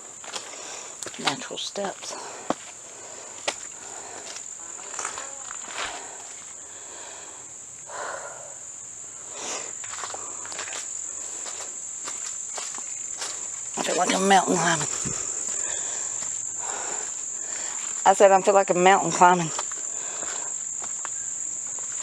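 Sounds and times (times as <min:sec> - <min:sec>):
insects droning: 0:00.0 - 0:22.0
footsteps on steps: 0:00.2 - 0:06.5, 0:09.8 - 0:18.2.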